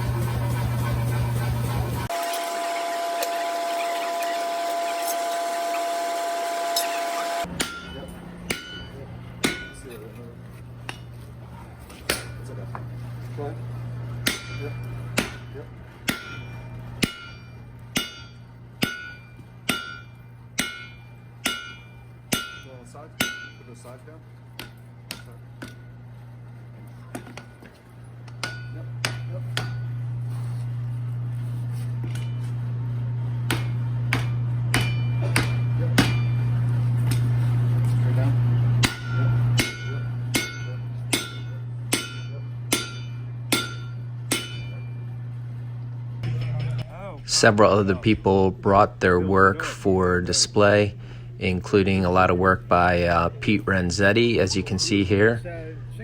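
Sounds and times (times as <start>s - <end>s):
steady low hum: 0.0s - 56.0s
hammer striking iron on anvil: 6.5s - 10.2s, 10.8s - 11.1s, 12.1s - 12.5s, 14.2s - 24.0s, 24.6s - 25.9s, 28.2s - 30.1s, 32.0s - 32.5s, 33.4s - 37.4s, 38.7s - 45.2s.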